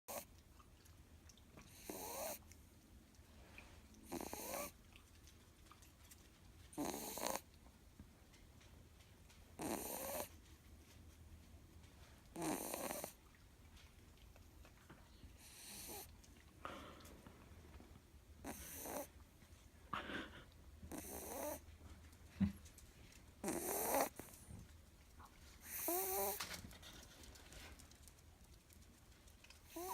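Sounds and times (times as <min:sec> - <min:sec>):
puppy snoring: 0:00.1 - 0:00.3, 0:01.6 - 0:02.5, 0:04.0 - 0:04.8, 0:06.7 - 0:07.6, 0:09.5 - 0:10.4, 0:12.3 - 0:13.2, 0:15.3 - 0:17.0, 0:18.4 - 0:19.2, 0:19.9 - 0:21.7, 0:23.4 - 0:24.6, 0:25.6 - 0:26.6, 0:29.6 - 0:29.9.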